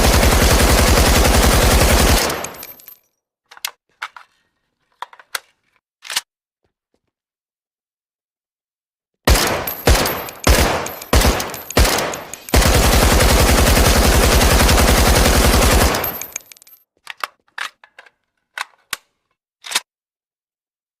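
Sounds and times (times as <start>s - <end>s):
automatic gunfire burst: 0.0s - 2.6s, 9.3s - 16.4s
rifle single shots: 9.3s - 12.7s.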